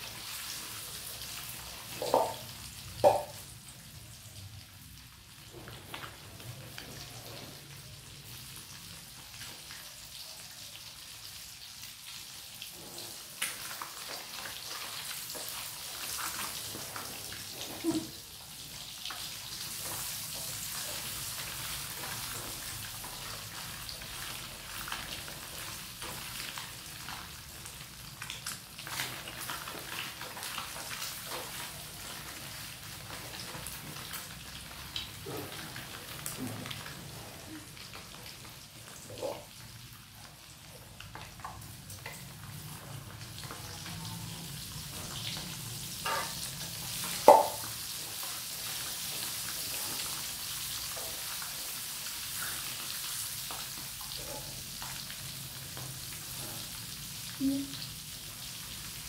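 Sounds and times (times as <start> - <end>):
eggs sizzling in a pan: 0.0 - 59.0
utensil knocking against pan: 3.0 - 3.3, 47.3 - 47.6.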